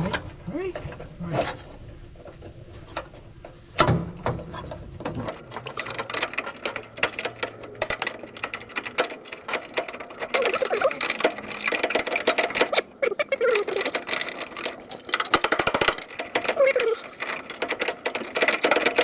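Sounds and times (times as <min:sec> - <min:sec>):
small metal parts clicking and rattling: 0:05.3 - 0:19.0.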